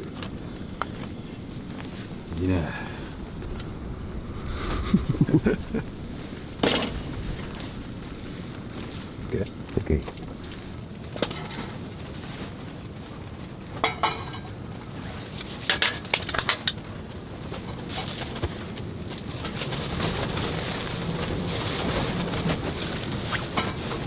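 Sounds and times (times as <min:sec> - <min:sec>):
tableware clinking: 0:13.8 - 0:14.6.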